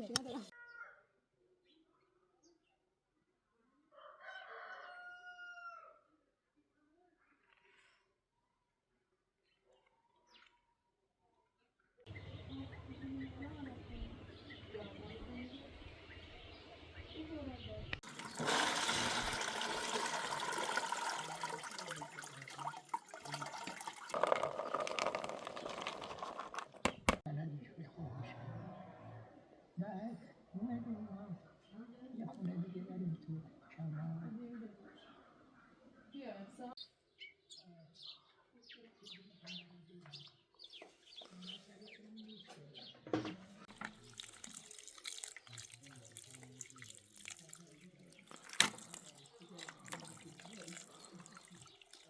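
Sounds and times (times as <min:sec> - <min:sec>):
small birds chirping: 0:00.0 - 0:00.9, 0:12.1 - 0:18.4, 0:34.6 - 0:43.0, 0:43.7 - 0:52.0
water running and splashing: 0:18.0 - 0:27.2, 0:43.7 - 0:52.0.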